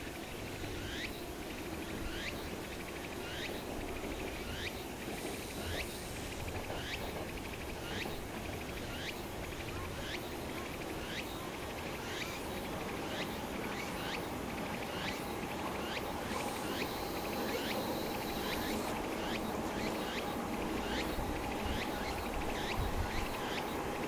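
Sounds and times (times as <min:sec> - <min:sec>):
insect chirping: 0:11.0 - 0:23.9
jet engine drone: 0:11.1 - 0:24.0.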